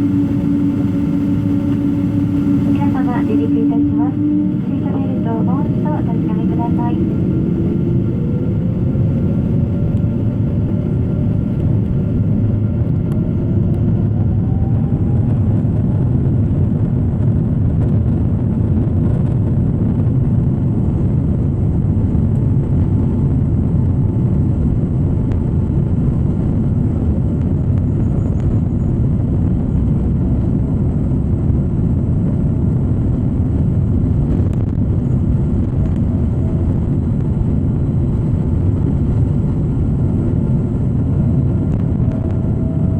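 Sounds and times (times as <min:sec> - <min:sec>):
jet engines spooling up: 0:00.0 - 0:16.8.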